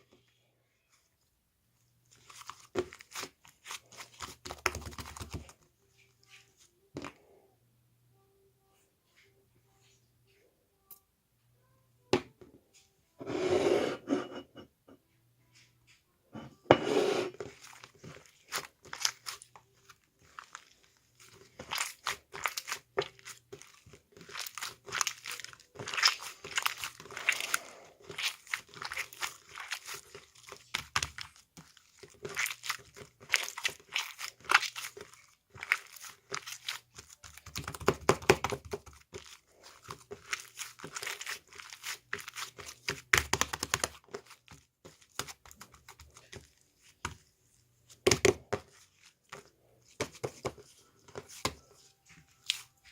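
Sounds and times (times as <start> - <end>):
hands squishing slime: 2.1 - 5.6, 17.4 - 52.9.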